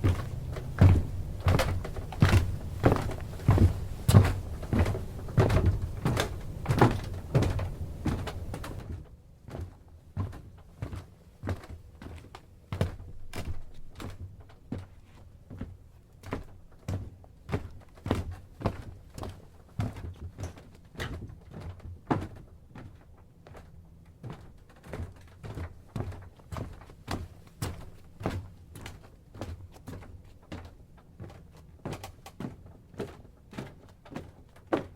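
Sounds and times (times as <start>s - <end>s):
footsteps on wooden dock: 0.0s - 8.8s.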